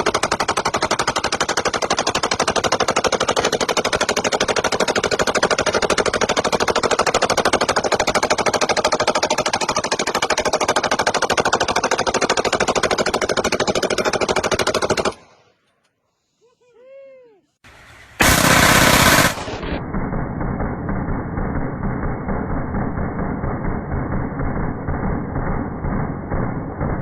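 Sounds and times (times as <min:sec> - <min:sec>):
automatic gunfire: 0:00.0 - 0:15.2, 0:18.2 - 0:19.8.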